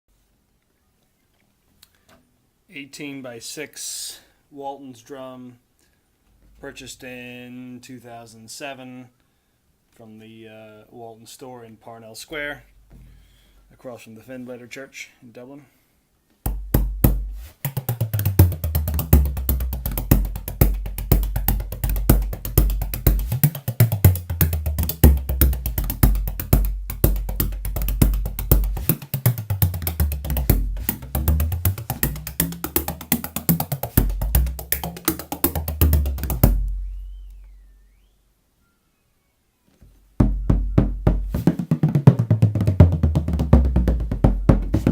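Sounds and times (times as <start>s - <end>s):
frame drum played fast: 16.5s - 37.0s, 40.2s - 44.9s.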